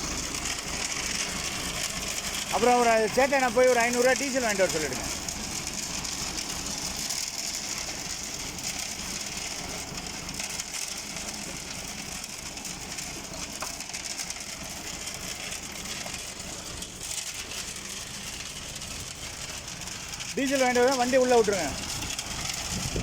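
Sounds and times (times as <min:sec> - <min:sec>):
concrete mixer drum tumbling stone: 0:00.0 - 0:23.0
tractor engine running: 0:00.0 - 0:23.0.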